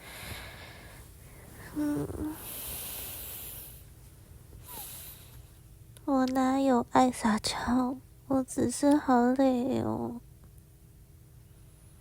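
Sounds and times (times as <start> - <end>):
woman humming mm: 1.7 - 2.5.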